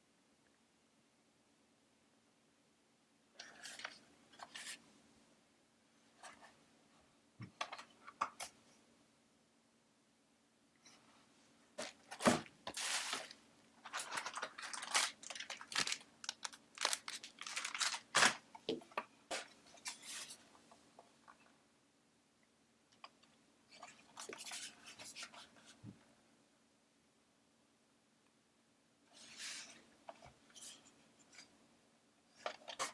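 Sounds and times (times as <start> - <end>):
packaging crinkling and tearing: 11.8 - 18.4.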